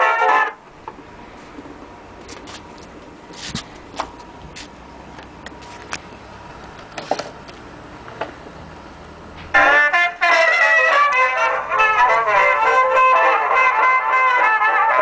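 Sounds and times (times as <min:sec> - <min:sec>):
brass band music on phonograph: 0:00.0 - 0:00.6, 0:09.5 - 0:15.0
record surface hiss: 0:00.0 - 0:15.0.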